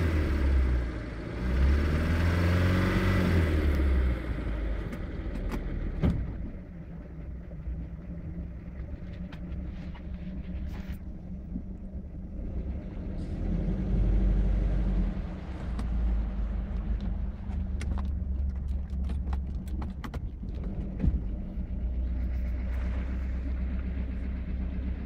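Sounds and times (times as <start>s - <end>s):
boat engine knocking: 4.8s - 9.7s, 15.7s - 25.0s.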